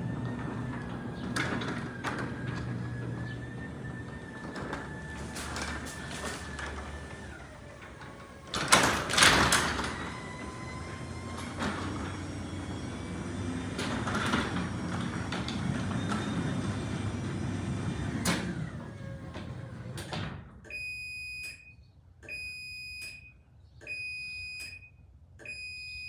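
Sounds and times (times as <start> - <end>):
garage door rattling and clanking: 0.0 - 20.6.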